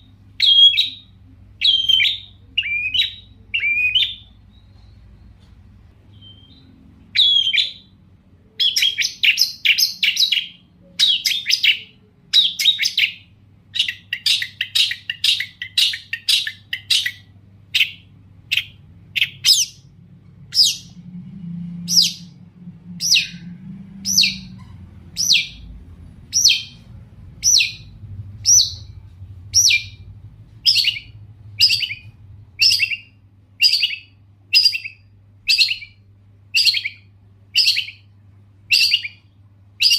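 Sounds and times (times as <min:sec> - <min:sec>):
faint low hum: 0:00.0 - 0:39.9
shrike singing: 0:08.6 - 0:38.1.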